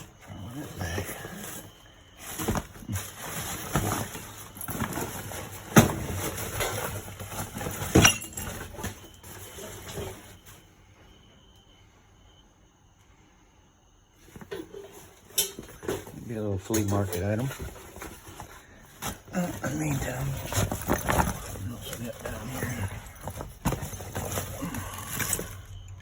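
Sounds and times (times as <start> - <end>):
household items clattering: 0.0 - 10.6, 14.3 - 26.0
steady rustling: 14.2 - 25.9.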